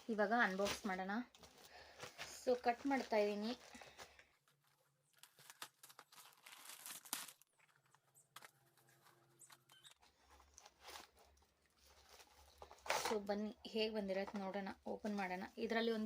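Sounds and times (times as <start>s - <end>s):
plastic package rustling and tearing: 0.4s - 13.3s.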